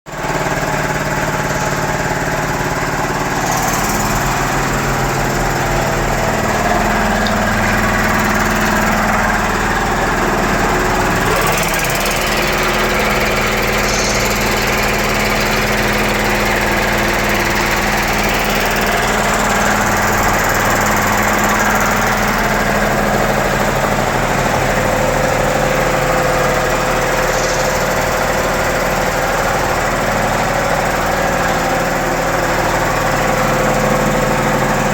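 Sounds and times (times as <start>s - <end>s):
air compressor running: 0.1s - 34.9s.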